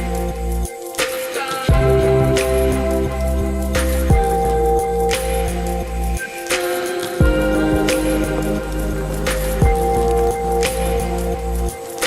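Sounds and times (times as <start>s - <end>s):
synth music with steady beat: 0.0s - 12.0s.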